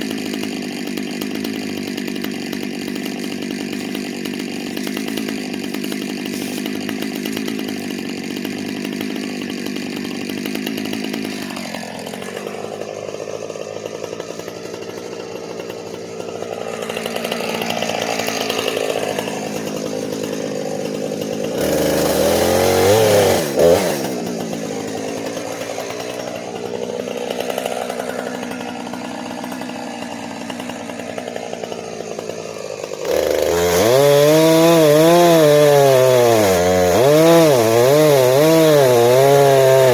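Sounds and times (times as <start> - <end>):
chainsaw cutting wood: 0.0 - 39.9.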